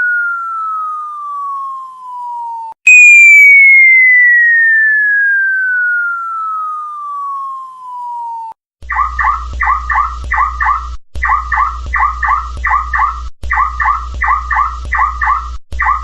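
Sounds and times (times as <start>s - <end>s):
falling bomb whistle: 0.0s - 10.5s
synthetic alien chirping: 0.0s - 16.0s
low hum: 8.8s - 16.0s.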